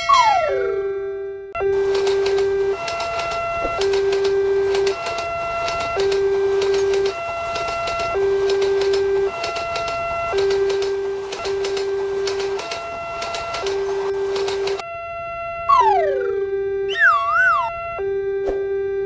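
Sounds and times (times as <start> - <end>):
two-tone siren: 0.0 - 19.0
rapid irregular clicking: 1.8 - 14.8.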